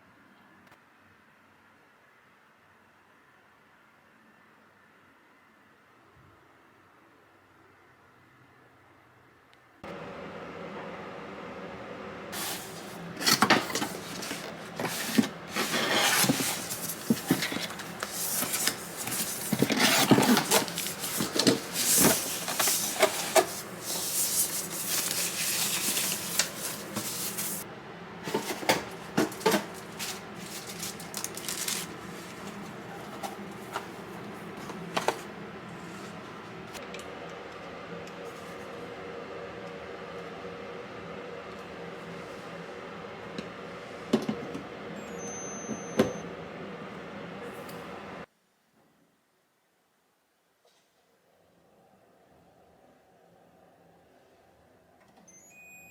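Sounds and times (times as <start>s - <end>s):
rustling and scraping: 12.4s - 27.6s, 28.2s - 36.2s.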